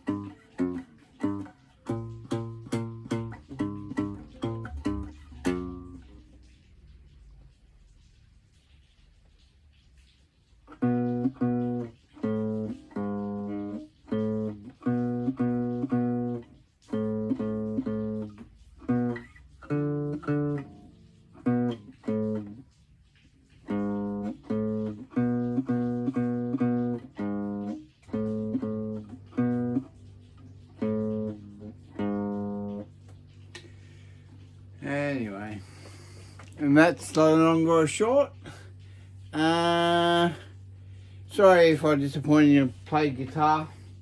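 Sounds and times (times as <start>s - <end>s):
guitar chords strummed: 0.0s - 6.3s, 10.8s - 22.6s, 23.7s - 32.9s, 39.3s - 40.5s.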